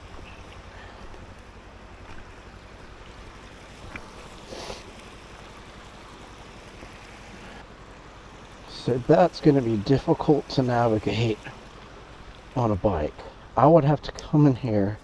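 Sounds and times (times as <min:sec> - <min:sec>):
motorcycle engine idling: 0:00.0 - 0:06.7
flowing water hissing: 0:00.0 - 0:13.8.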